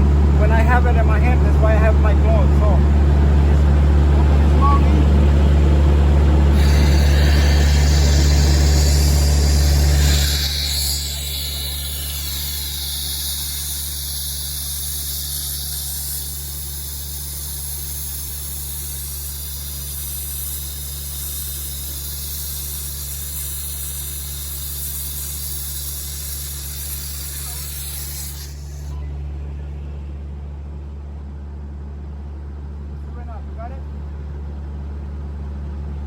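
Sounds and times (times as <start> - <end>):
air compressor engine humming: 0.0 - 36.0
compressed air hissing: 6.5 - 29.0.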